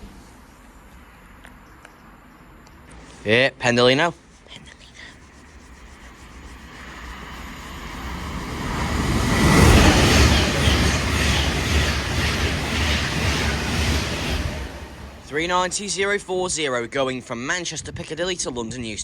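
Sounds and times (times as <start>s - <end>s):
electric train passing: 5.2s - 17.5s
wheels clattering on rails: 7.0s - 16.9s.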